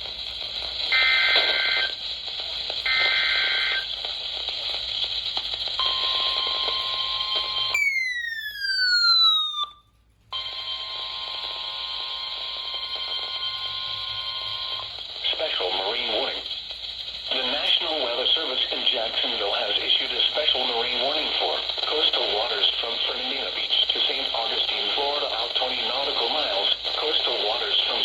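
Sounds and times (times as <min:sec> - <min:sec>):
radio static hiss: 0:00.0 - 0:07.8, 0:10.4 - 0:28.0
loud falling whistle: 0:07.7 - 0:09.8.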